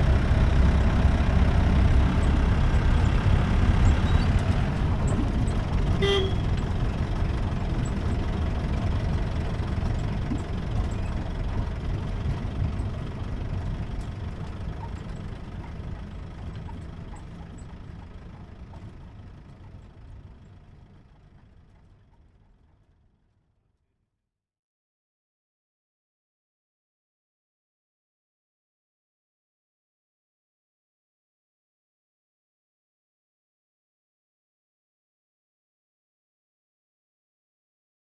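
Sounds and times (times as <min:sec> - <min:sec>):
car engine and road rumble: 0:00.0 - 0:23.2
car horn toot: 0:05.9 - 0:06.6.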